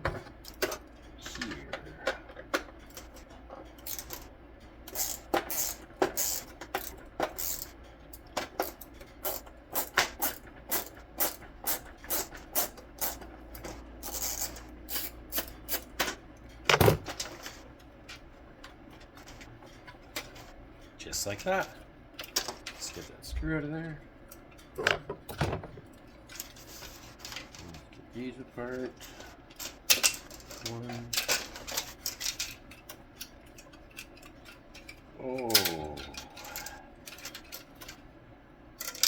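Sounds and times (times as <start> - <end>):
hand tools and plastic clicking: 0.0 - 20.6, 28.8 - 38.0.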